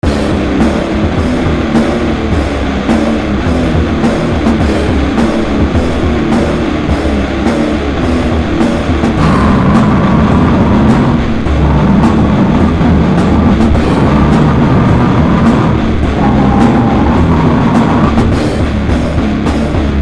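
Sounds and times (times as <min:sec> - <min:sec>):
distorted low-tuned guitars: 0:00.0 - 0:20.0
pounding drums: 0:00.0 - 0:20.0
high ringing feedback tone: 0:16.2 - 0:18.1.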